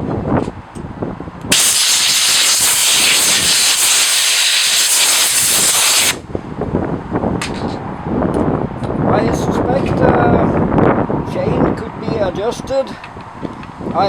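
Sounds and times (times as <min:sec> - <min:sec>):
loud steady hiss: 0:01.5 - 0:06.2.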